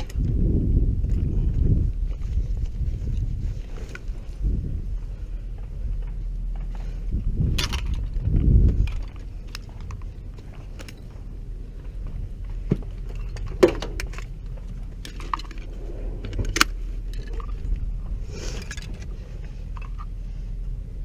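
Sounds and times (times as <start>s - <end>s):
steady low hum: 0.0s - 21.0s
metallic clinks and knocks: 12.7s - 17.8s.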